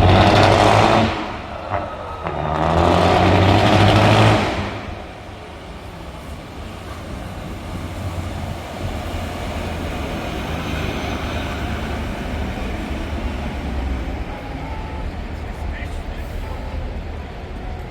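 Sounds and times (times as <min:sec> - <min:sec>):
truck engine rumbling: 0:00.0 - 0:17.9.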